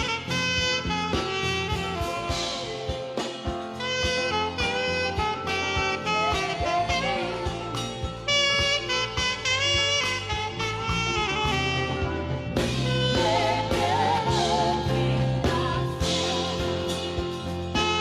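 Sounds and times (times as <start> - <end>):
saxophone playing slow melody: 0.0 - 14.9, 16.0 - 18.0
backing track with drums: 0.0 - 18.0.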